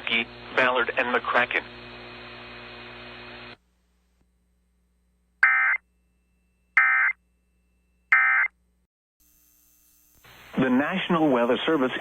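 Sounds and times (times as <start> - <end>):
faint broadcast hum: 0.0 - 6.6, 9.3 - 12.0.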